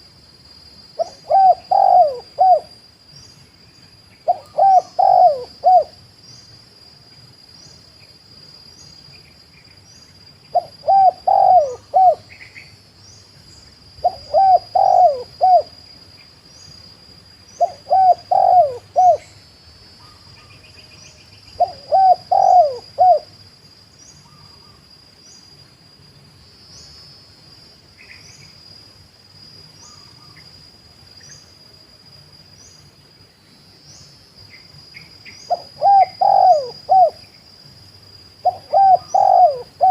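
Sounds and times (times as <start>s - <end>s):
faint high-pitched whine: 0.0s - 39.9s
dove cooing: 1.0s - 2.7s, 4.2s - 6.0s, 10.5s - 12.4s, 14.0s - 15.8s, 17.6s - 19.4s, 21.6s - 23.4s, 35.4s - 37.3s, 38.4s - 39.9s.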